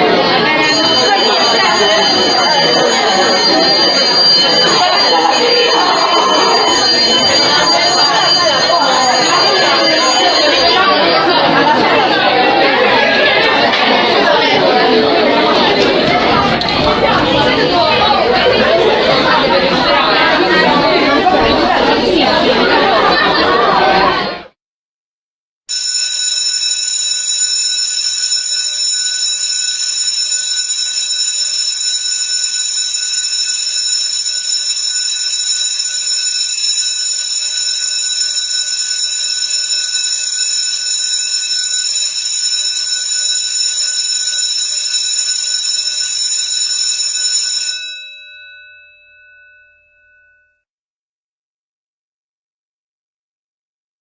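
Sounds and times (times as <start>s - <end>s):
electric school bell ringing: 0.2s - 12.2s, 25.7s - 50.6s.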